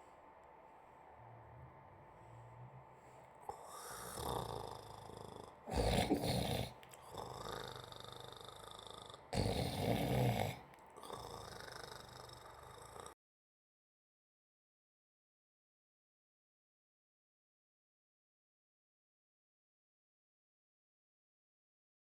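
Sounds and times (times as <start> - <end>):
soft breathing: 0.0 - 13.2
person snoring: 2.1 - 13.2.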